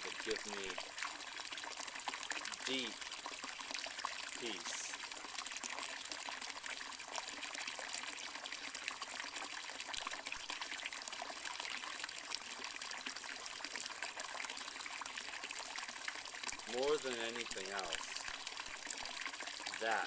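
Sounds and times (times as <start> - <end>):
water trickling and splashing: 0.0 - 20.0.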